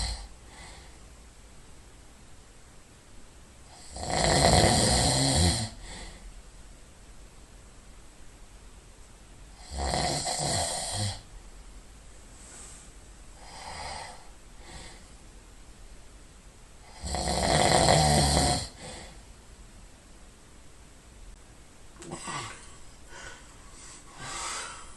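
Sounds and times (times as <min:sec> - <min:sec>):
person snoring loudly: 0:00.0 - 0:00.3, 0:03.7 - 0:06.0, 0:09.6 - 0:11.3, 0:13.4 - 0:15.0, 0:16.9 - 0:19.2
soft breath: 0:00.0 - 0:01.1, 0:12.2 - 0:15.3, 0:22.0 - 0:24.9.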